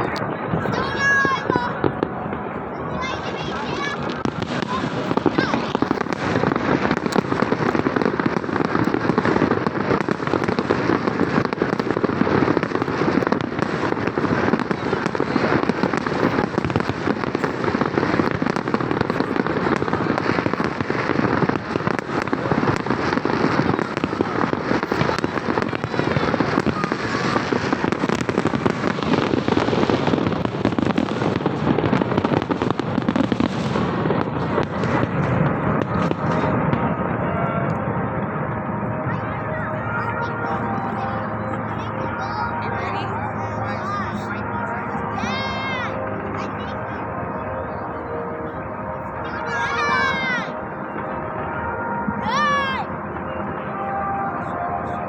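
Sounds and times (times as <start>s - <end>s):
fireworks bangs and crackles: 0.0s - 55.0s.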